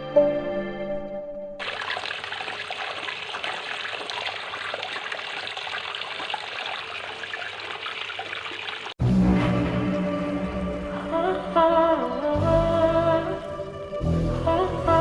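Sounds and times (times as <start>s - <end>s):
fountain water trickling: 1.6s - 9.0s.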